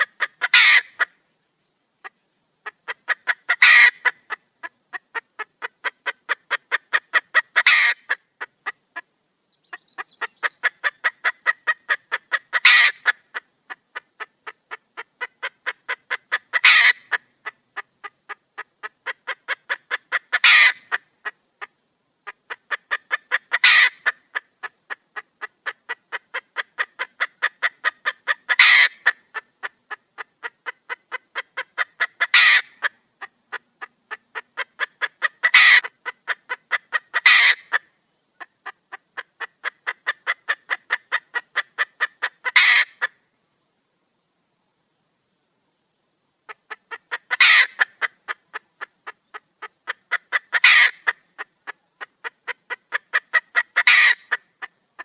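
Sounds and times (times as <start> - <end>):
hen squawking: 0.0 - 1.1, 2.6 - 4.3, 6.9 - 8.5, 9.7 - 13.2, 15.2 - 17.6, 19.1 - 21.4, 22.5 - 24.2, 27.0 - 29.2, 31.6 - 32.9, 34.5 - 37.8, 42.0 - 43.1, 46.5 - 48.6, 49.6 - 51.2, 52.0 - 54.4
hen clucking: 0.0 - 1.2, 2.0 - 43.2, 46.4 - 55.0.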